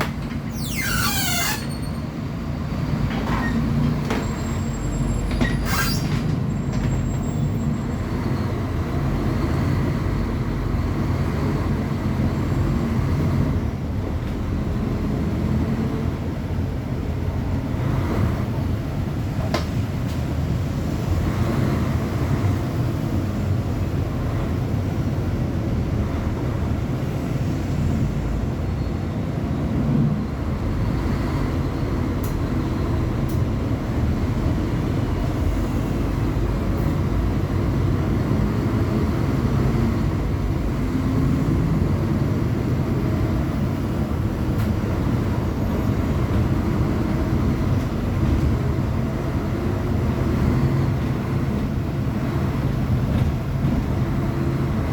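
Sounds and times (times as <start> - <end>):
bus diesel engine running: 0.0 - 54.9.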